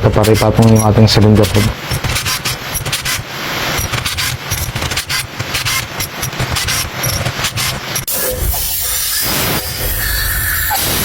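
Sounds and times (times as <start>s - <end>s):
tools scraping and clicking on engine: 0.0s - 8.4s
steady hiss: 0.0s - 11.0s.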